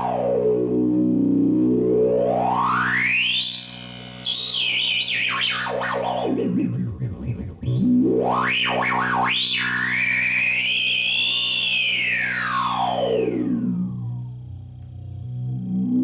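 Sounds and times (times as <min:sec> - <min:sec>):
low synthesizer drone: 0:00.0 - 0:16.0
synthesizer lead gliding in pitch: 0:04.1 - 0:14.6.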